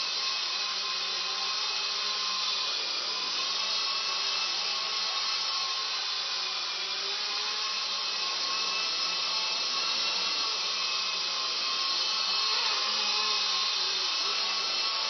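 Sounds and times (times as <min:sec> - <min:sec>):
rc helicopter buzzing whine: 0:00.0 - 0:15.0.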